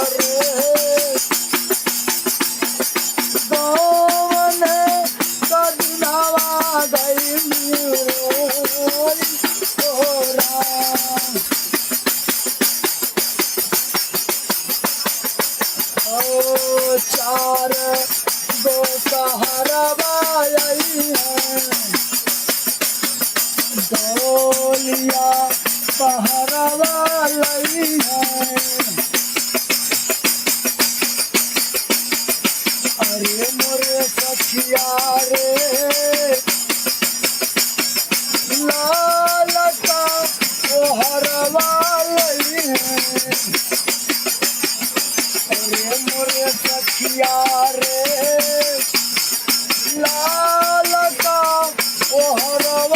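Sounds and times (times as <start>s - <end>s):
person singing: 0.0s - 1.2s, 3.4s - 11.5s, 16.1s - 22.0s, 23.7s - 29.0s, 38.5s - 43.6s, 45.5s - 49.0s, 49.8s - 52.9s
tambourine jingling beat: 0.0s - 52.9s.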